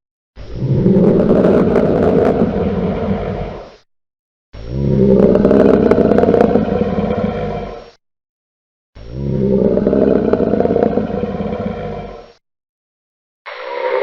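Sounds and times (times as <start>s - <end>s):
deep growling monster roar: 0.4s - 3.7s, 4.6s - 8.0s, 9.0s - 12.4s.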